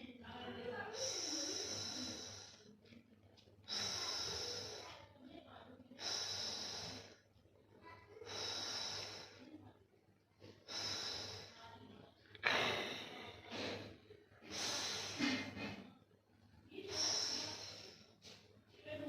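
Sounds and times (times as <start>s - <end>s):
sleeping cat breathing: 1.0s - 2.6s, 3.7s - 5.0s, 6.0s - 7.2s, 8.3s - 9.5s, 10.6s - 11.6s, 16.9s - 18.2s.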